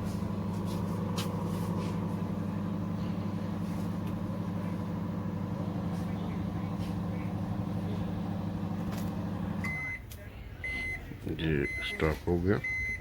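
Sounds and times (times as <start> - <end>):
microwave oven humming: 0.0 - 12.0.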